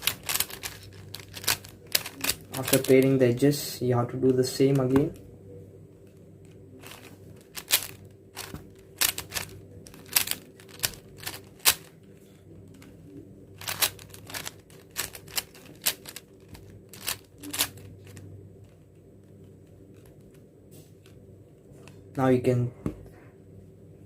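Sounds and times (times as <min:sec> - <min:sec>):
plastic puzzle cube clacking: 0:00.0 - 0:03.1, 0:06.8 - 0:11.9, 0:13.6 - 0:18.2.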